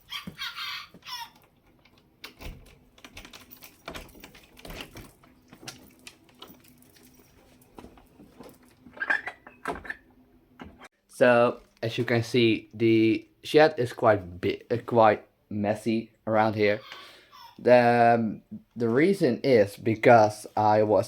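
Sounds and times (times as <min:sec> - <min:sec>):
light clicks and knocks of handling: 0:01.4 - 0:09.0.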